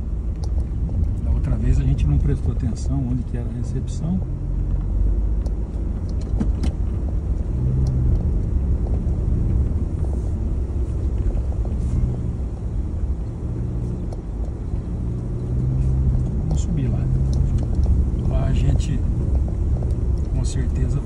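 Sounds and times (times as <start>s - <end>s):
car engine and tyre rumble: 0.0s - 21.0s
low hum: 0.0s - 21.0s
small clicks: 5.4s - 9.0s, 15.2s - 18.3s.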